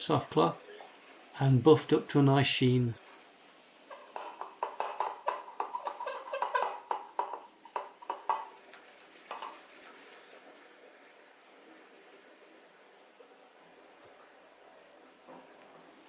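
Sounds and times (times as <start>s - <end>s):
cloth rubbing wood with squeak: 0.0s - 10.4s.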